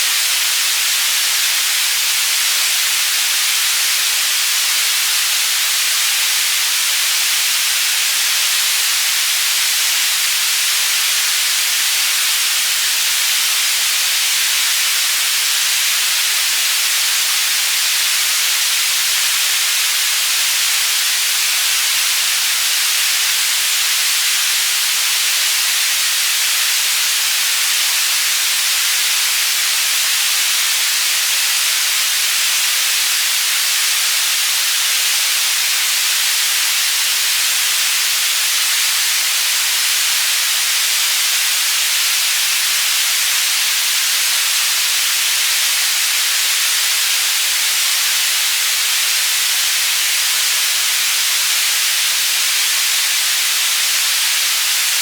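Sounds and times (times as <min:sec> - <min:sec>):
white noise hiss: 0:00.0 - 0:55.0.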